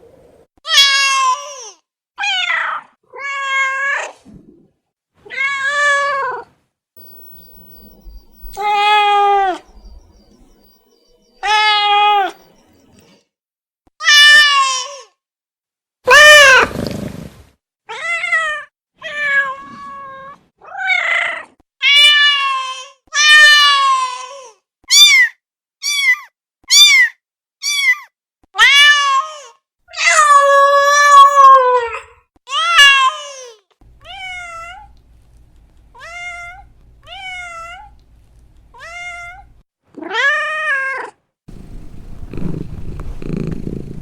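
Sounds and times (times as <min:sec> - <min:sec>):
cat meowing: 0:11.4 - 0:12.3.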